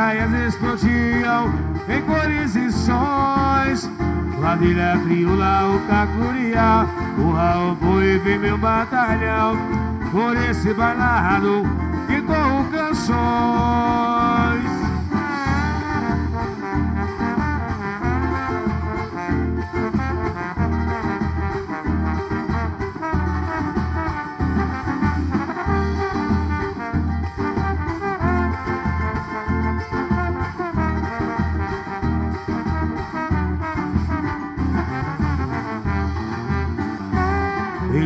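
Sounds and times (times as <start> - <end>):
drum and bass beat: 0.0 - 38.0
horns playing melody: 0.0 - 38.0.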